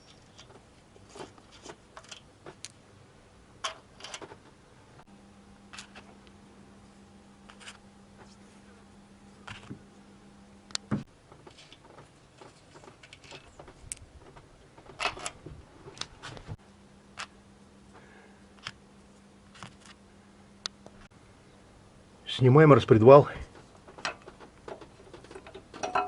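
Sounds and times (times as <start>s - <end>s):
low steady hum: 0.0s - 26.0s
socket wrench and metal parts clinking: 25.3s - 26.0s.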